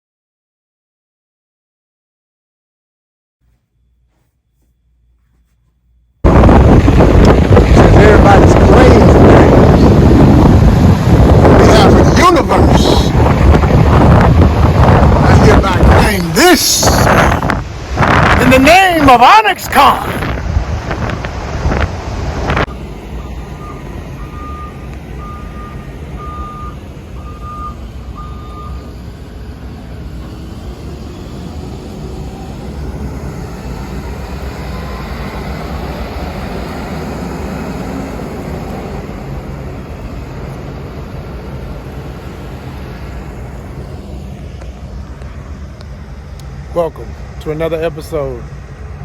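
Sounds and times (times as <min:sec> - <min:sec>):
low engine rumble: 0:03.4 - 0:18.6, 0:20.0 - 0:49.0
wind on microphone: 0:06.2 - 0:18.7, 0:20.1 - 0:22.8
backup alarm beeping: 0:23.1 - 0:29.0.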